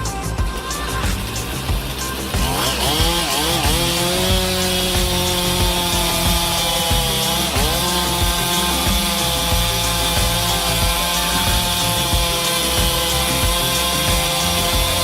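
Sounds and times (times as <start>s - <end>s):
chainsaw sawing wood: 0.5s - 15.0s.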